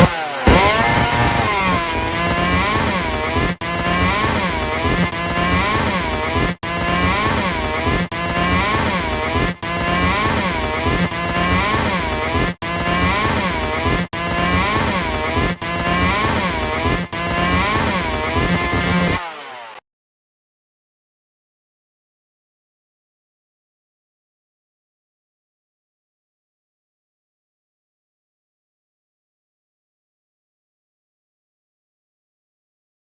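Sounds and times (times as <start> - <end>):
chainsaw engine revving: 0.0 - 19.8.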